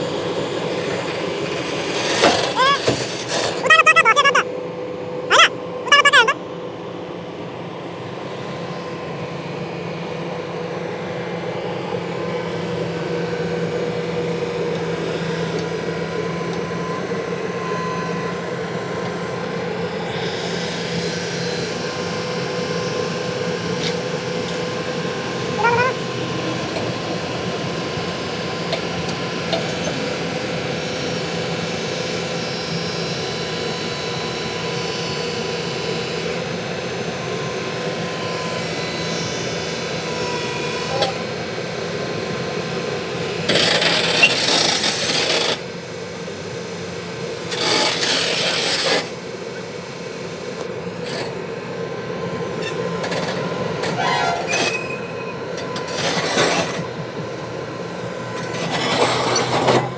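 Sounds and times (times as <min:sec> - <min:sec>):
excavator engine humming: 0:00.0 - 0:31.3, 0:49.1 - 0:59.9.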